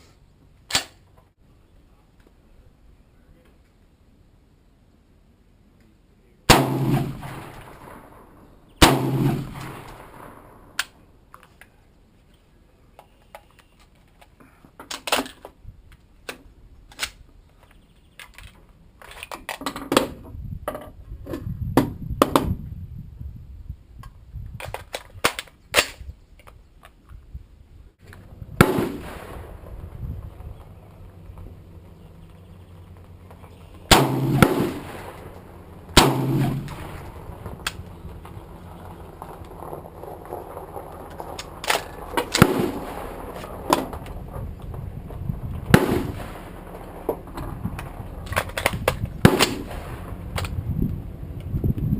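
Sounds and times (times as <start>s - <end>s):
rifle shots with echo: 6.5s - 11.0s, 28.6s - 30.0s, 33.9s - 37.9s, 41.5s - 44.0s, 45.6s - 50.6s
metallic clacks of rifle action: 16.2s - 20.1s, 41.1s - 42.5s, 47.4s - 49.6s.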